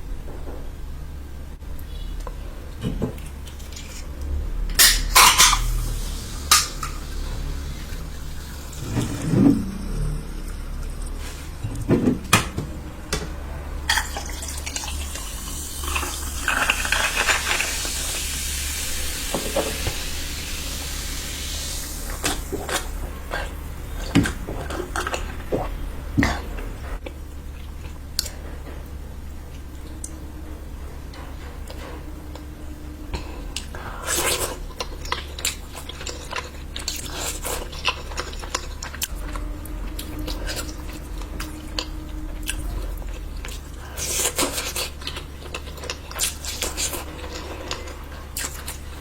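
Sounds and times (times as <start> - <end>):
wet squishing of food eating: 14.0 - 28.4, 33.2 - 49.0.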